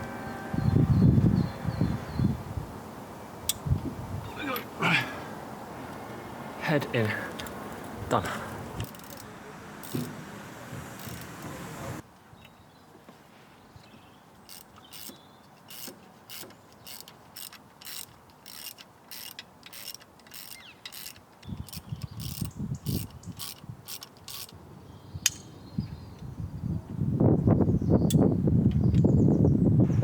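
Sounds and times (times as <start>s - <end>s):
rough handling noise: 6.9s - 12.0s, 13.0s - 24.6s
hand ratchet clicking: 8.8s - 10.3s, 11.0s - 11.6s, 14.5s - 24.5s.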